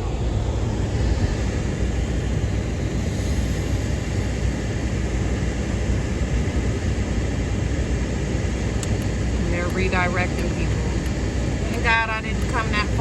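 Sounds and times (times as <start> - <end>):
car driving heard from cabin: 8.8 - 13.0.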